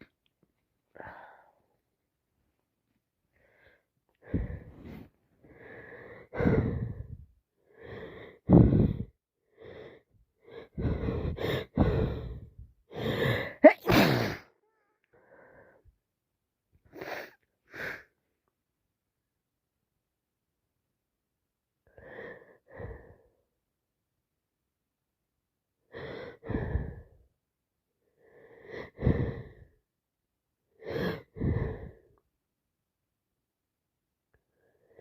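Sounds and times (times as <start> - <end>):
congested breathing: 9.7 - 13.7
woman sneezing: 13.6 - 14.5.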